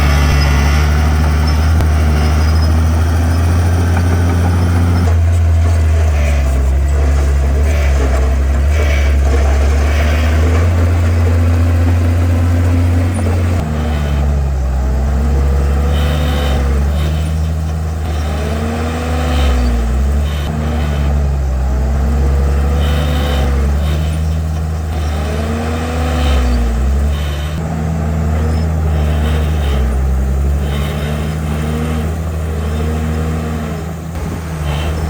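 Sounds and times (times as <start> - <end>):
bulldozer diesel engine droning: 0.0 - 35.0.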